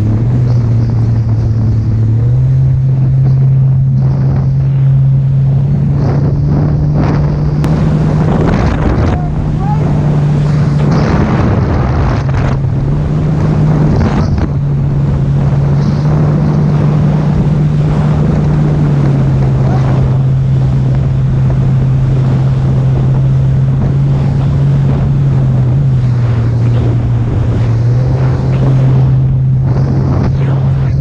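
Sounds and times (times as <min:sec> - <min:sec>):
jet ski engine drone: 0:00.0 - 0:31.0
wind and spray on microphone: 0:00.0 - 0:31.0.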